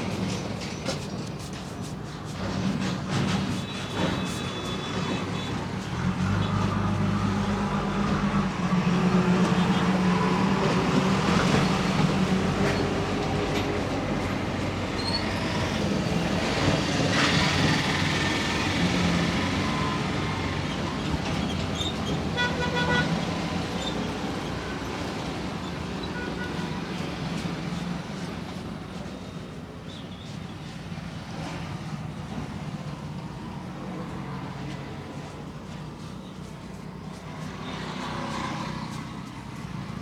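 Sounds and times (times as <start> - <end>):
road traffic passing: 0.0 - 40.0
vehicle horn toot: 22.4 - 23.2.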